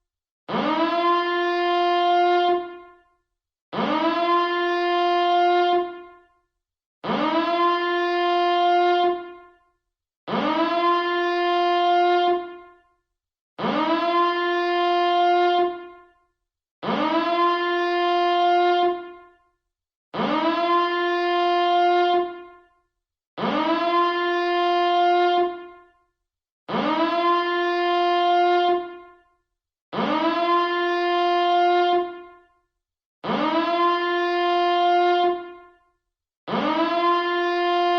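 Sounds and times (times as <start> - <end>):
alarm siren blasts: 0.5 - 3.1, 3.7 - 6.4, 7.0 - 9.7, 10.3 - 12.9, 13.6 - 16.2, 16.8 - 19.4, 20.2 - 22.8, 23.4 - 26.0, 26.7 - 29.3, 29.9 - 32.6, 33.2 - 35.9, 36.5 - 37.9.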